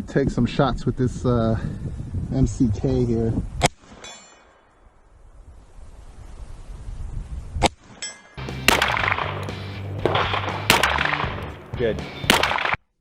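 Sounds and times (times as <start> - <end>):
background music with steady beat: 8.4 - 12.7
pistol shot: 8.6 - 11.5, 12.2 - 12.8.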